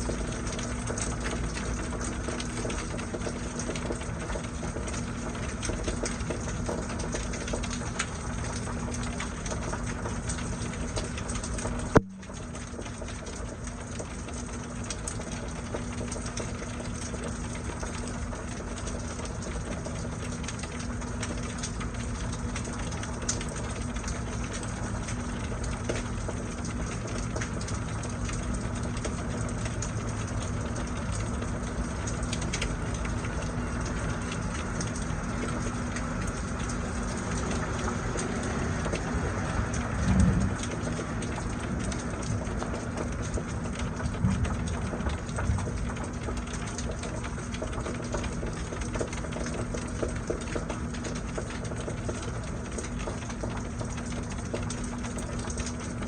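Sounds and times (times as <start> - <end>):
low mechanical hum: 0.0 - 56.0
steady rain falling: 0.0 - 56.0.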